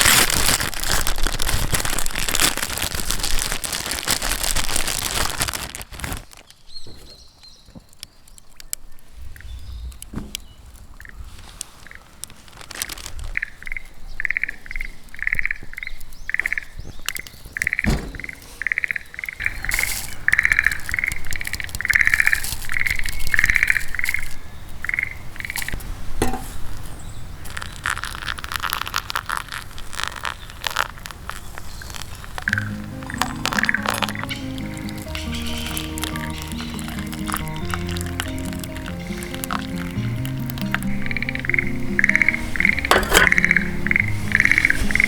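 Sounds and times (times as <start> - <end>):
crackling: 0.0 - 45.0
frog croaking: 10.9 - 12.2, 13.3 - 25.8, 32.4 - 45.0.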